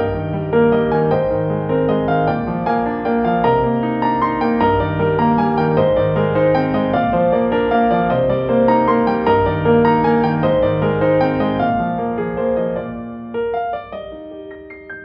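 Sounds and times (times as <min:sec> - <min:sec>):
piano background music with bass: 0:00.0 - 0:15.0.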